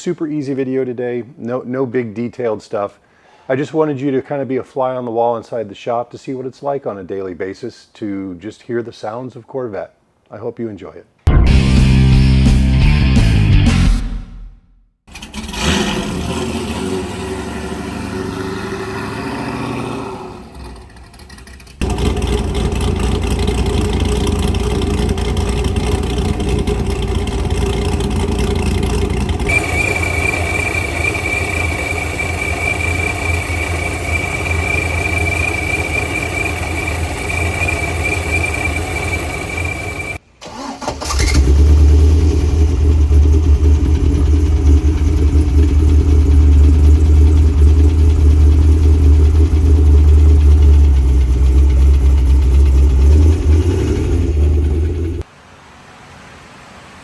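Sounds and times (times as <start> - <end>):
car engines idling: 15.1 - 55.2
steady high whine: 21.9 - 40.2, 42.3 - 53.6.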